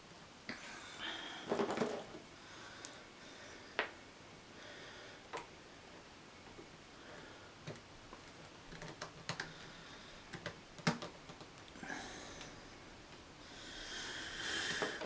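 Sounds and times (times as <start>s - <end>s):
plastic parts clicking together: 10.3s - 11.8s.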